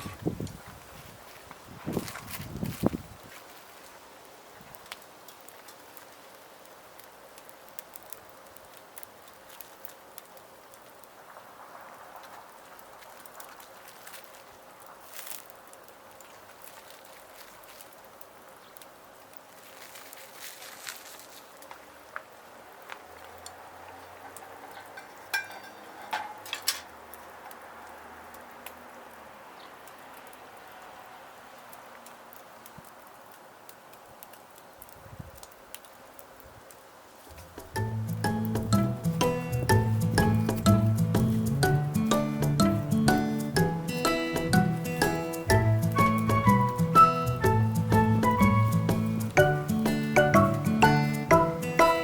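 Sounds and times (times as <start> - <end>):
wood fire crackling and popping: 0.0 - 52.0
knocks and clinks on a skillet: 24.7 - 26.9.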